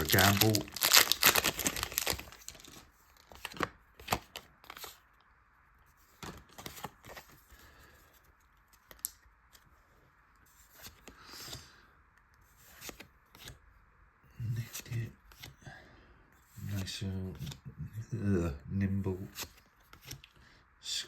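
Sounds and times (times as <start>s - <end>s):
foil wrapper rustling: 0.0s - 2.8s.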